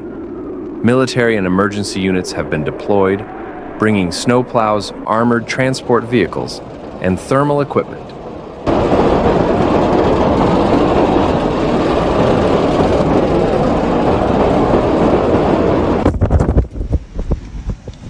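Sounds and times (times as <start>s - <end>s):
heavy vehicle running: 1.9s - 16.2s.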